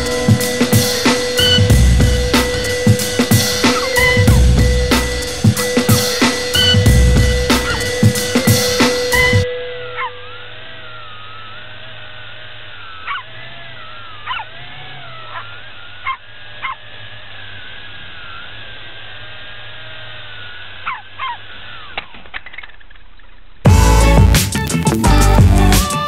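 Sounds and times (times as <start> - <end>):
drone motors whining: 0.0 - 26.0
dog barking: 3.6 - 4.4, 10.0 - 10.3, 13.1 - 13.3, 14.2 - 14.6, 15.2 - 16.8, 20.8 - 21.4.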